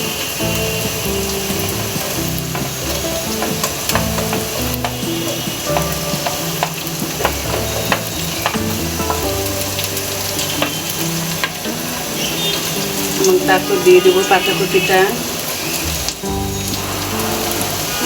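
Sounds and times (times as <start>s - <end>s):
vegetables sizzling in oil: 0.0s - 18.0s
spatula scraping pan: 0.8s - 9.6s.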